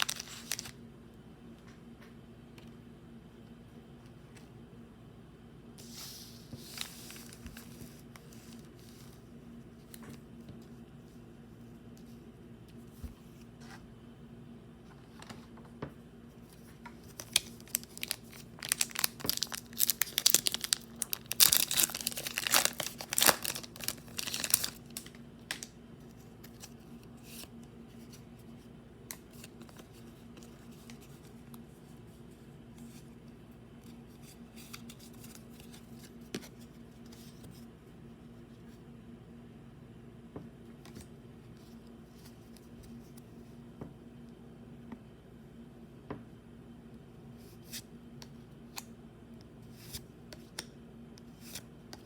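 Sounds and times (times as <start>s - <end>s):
foil wrapper tearing and crinkling: 0.0s - 0.7s, 17.1s - 25.6s
steady low hum: 0.0s - 52.0s.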